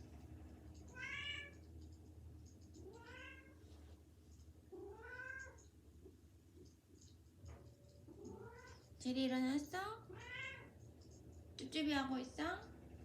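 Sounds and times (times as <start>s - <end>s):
cat meowing: 0.9s - 1.6s, 2.9s - 3.6s, 4.8s - 5.6s, 10.1s - 10.7s.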